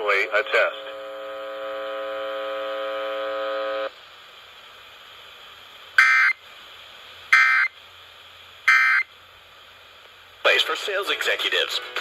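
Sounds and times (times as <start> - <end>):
data tone bursts: 6.0 - 6.4, 7.3 - 7.7, 8.7 - 9.1.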